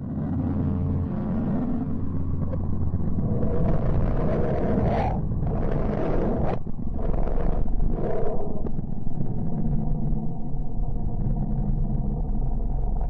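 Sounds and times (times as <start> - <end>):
low rumbling drone: 0.0 - 13.0.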